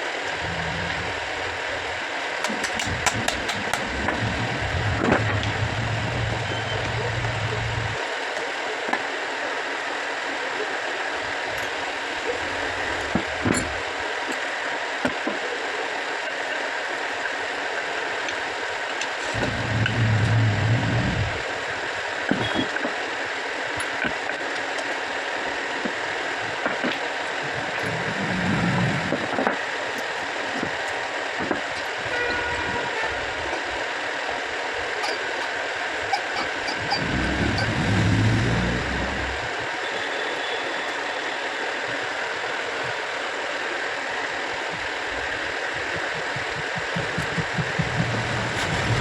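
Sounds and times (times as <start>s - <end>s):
water pump motor humming: 0.0s - 8.0s, 19.2s - 22.6s, 30.1s - 39.8s, 44.2s - 49.0s
steady hiss: 0.0s - 49.0s
handling clicks: 2.4s - 3.9s.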